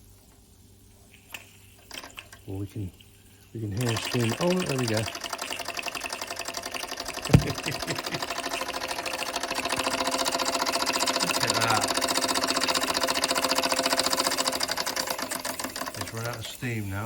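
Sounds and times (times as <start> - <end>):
toy steam engine chuffing: 3.8 - 17.0
sharp knock: 7.3 - 7.8.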